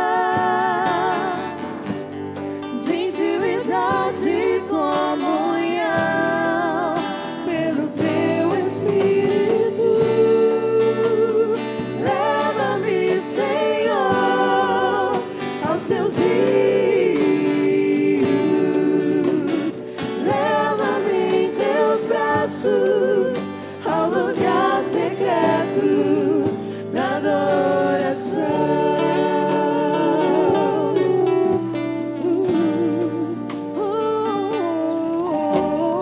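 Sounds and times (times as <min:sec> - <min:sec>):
person singing: 0:00.0 - 0:01.8, 0:02.6 - 0:36.0
acoustic guitar: 0:00.0 - 0:36.0.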